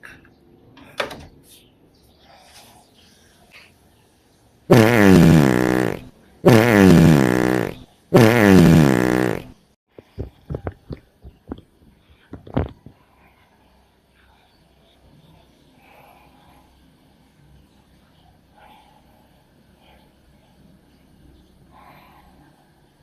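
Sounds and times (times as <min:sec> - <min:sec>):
fart sound effect: 0:04.7 - 0:09.6.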